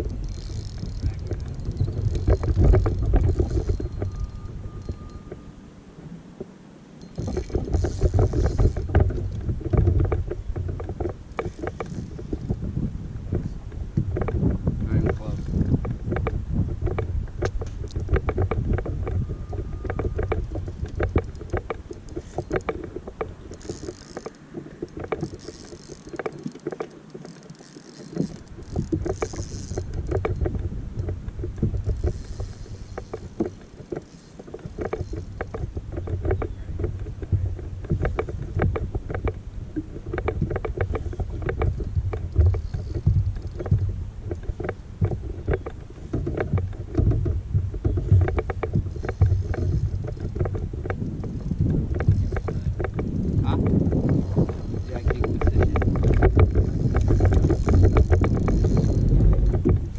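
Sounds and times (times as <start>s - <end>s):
wind buffeting microphone: 0.0s - 59.9s
small knocks on boat: 7.2s - 59.9s
water slapping against hull: 7.2s - 59.9s.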